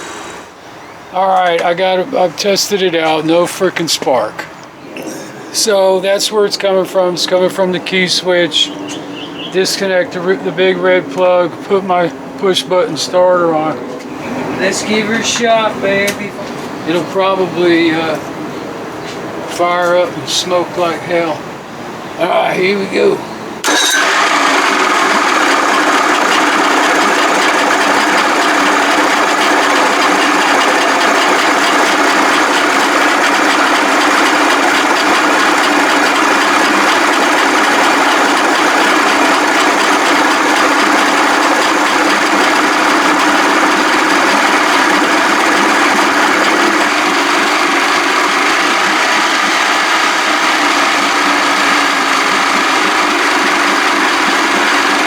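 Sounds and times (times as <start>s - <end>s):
outboard engine running: 23.6s - 55.0s.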